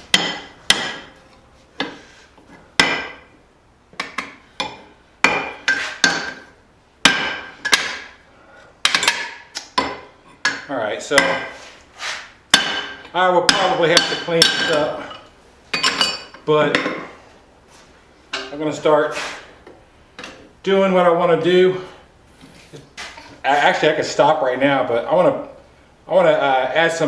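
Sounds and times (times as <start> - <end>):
hammer striking metal on anvil: 0.1 - 1.2, 2.8 - 3.3, 4.0 - 6.4, 7.0 - 8.2, 8.8 - 11.6, 12.5 - 15.2.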